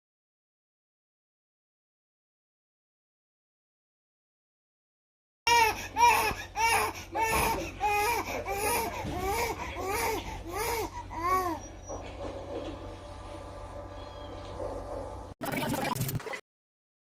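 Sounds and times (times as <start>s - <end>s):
baby crying: 5.5s - 11.9s.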